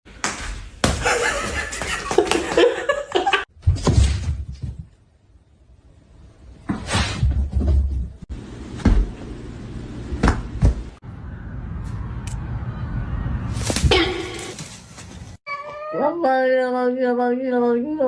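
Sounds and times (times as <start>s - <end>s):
person laughing: 0.9s - 3.5s, 13.8s - 14.6s.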